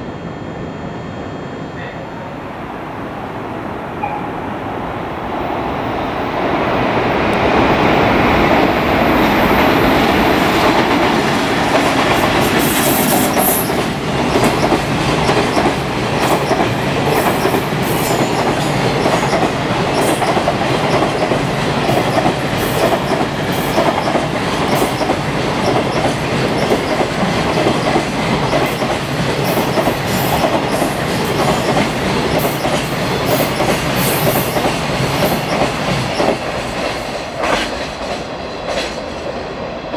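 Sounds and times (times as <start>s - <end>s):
freight train rumbling past: 0.0s - 39.9s
train wheels clacking over rail joints: 10.2s - 39.3s.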